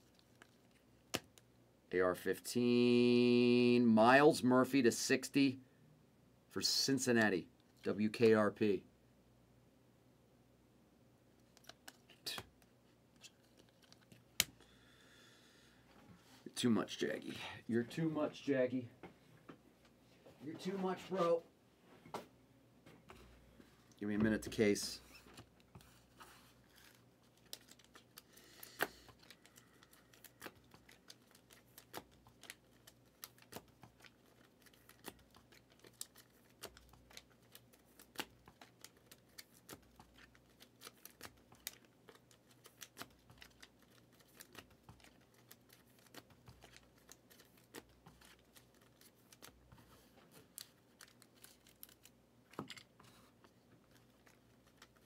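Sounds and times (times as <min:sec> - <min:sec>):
pack wrappers crinkling and tearing: 0:00.0 - 0:01.4, 0:11.4 - 0:14.5, 0:25.6 - 0:49.7, 0:50.3 - 0:52.2, 0:53.8 - 0:55.0
soft clicks of card handling: 0:11.4 - 0:14.7.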